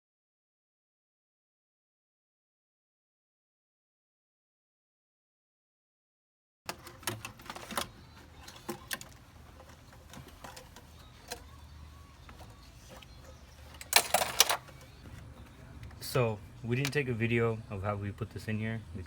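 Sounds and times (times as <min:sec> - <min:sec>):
clattering: 0:12.4 - 0:15.0.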